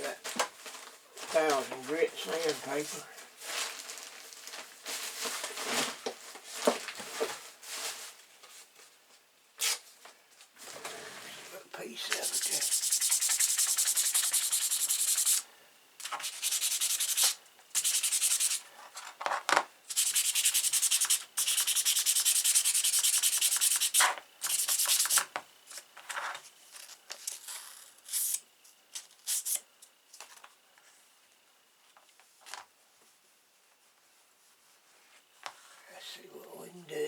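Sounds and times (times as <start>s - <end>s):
sandpaper rubbing on steel blade: 12.1s - 15.4s, 16.0s - 18.6s, 19.9s - 25.3s.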